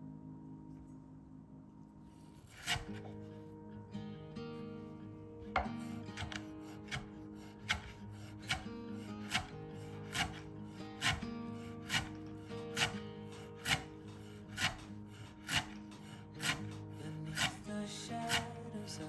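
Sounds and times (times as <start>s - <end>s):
background music: 0.0s - 19.0s
knife cutting on wooden board: 2.3s - 3.3s, 5.6s - 19.0s.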